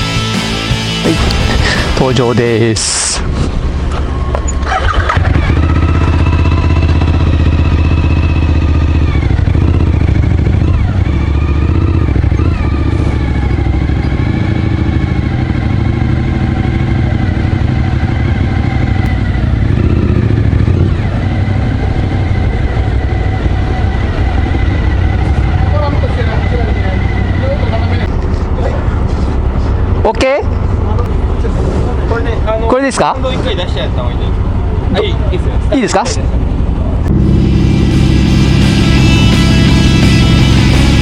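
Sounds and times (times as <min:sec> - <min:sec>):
motorcycle engine running: 0:03.6 - 0:31.5, 0:34.2 - 0:41.0
high rising and falling tones: 0:37.1 - 0:41.0.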